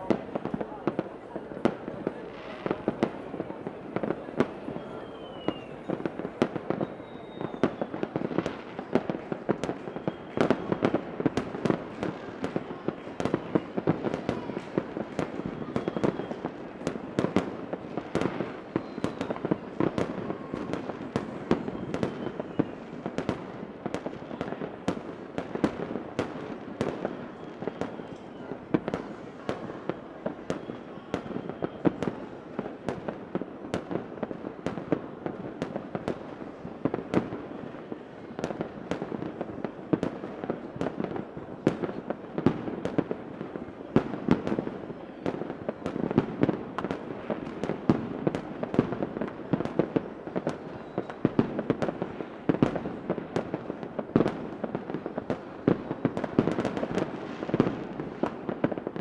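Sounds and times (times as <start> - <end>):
fireworks popping and crackling: 0.0 - 59.0
firework whistles: 4.4 - 11.5, 13.2 - 23.5, 26.2 - 32.4, 50.6 - 51.4.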